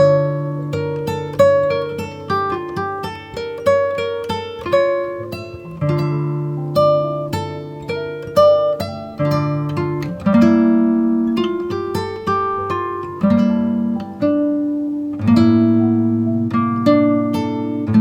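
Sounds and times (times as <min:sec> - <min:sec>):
plucked string music: 0:00.0 - 0:18.0.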